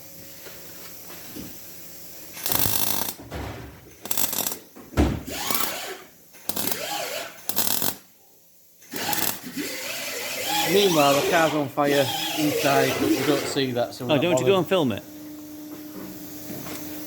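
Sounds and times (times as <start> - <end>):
clattering mechanical noise: 2.3 - 8.1, 8.8 - 13.8.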